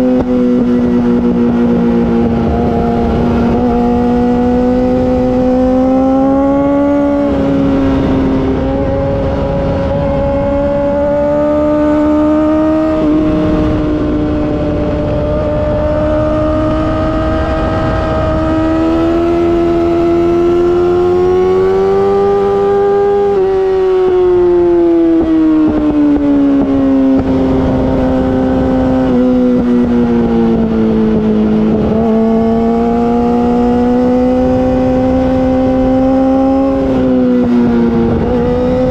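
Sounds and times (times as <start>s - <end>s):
motorcycle engine at high revs: 0.0s - 38.9s.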